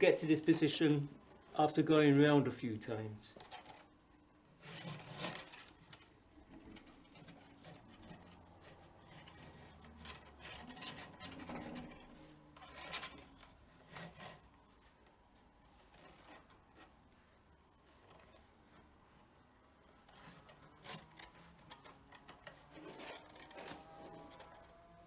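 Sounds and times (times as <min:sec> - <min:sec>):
drum strap rubbing and rasping: 0:03.3 - 0:25.0.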